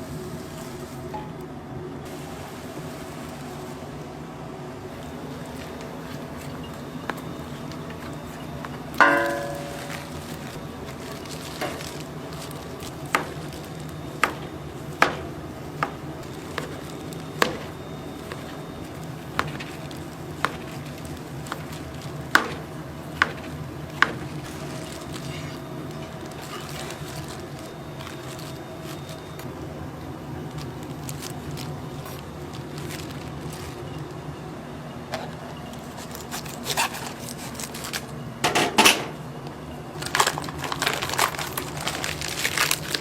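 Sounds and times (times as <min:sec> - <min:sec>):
steady background hum: 0:00.0 - 0:43.0
ringing metal clang: 0:09.0 - 0:10.2
kitchen utensils clinking: 0:09.0 - 0:18.6.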